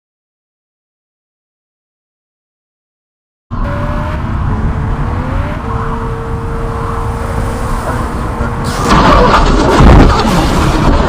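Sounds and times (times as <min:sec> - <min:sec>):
car engines rumbling: 0:03.5 - 0:11.0.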